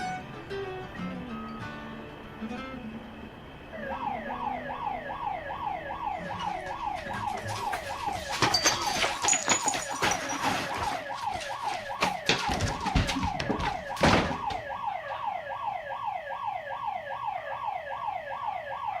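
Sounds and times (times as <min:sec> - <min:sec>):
yelp siren wailing: 0:02.6 - 0:19.0
clattering knocks: 0:06.2 - 0:15.2.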